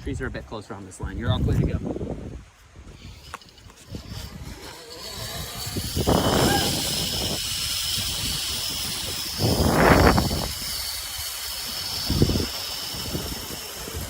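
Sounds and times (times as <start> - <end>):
wind rushing over microphone: 0.0 - 14.0
zipline pulleys whirring on cable: 2.8 - 14.0.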